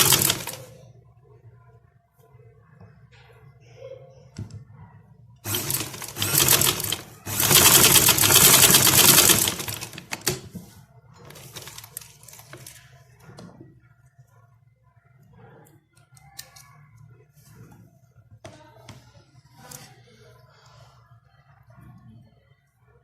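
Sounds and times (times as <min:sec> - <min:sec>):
sewing machine stitching: 0:00.0 - 0:00.7, 0:05.5 - 0:10.5, 0:11.4 - 0:12.0.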